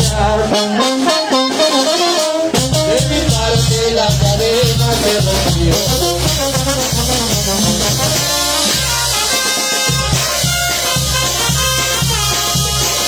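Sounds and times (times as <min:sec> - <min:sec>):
held brass notes: 0:00.0 - 0:13.0
percussion: 0:00.0 - 0:13.0
pulsing bass line: 0:02.6 - 0:09.2.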